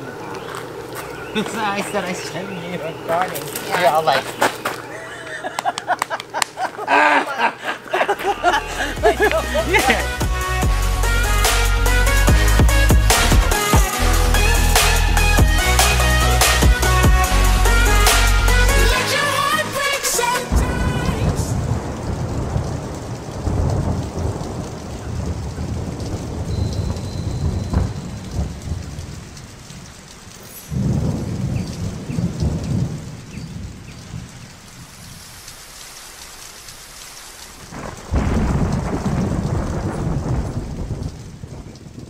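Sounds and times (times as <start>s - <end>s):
rain falling: 0.0s - 42.0s
rolling thunder: 20.5s - 30.0s, 30.6s - 35.3s, 37.4s - 42.0s.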